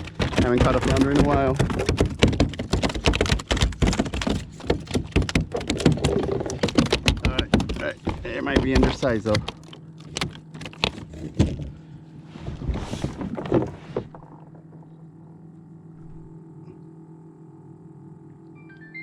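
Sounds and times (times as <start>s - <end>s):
knocks and clicks of handling: 0.0s - 11.8s
low steady hum: 0.0s - 19.0s.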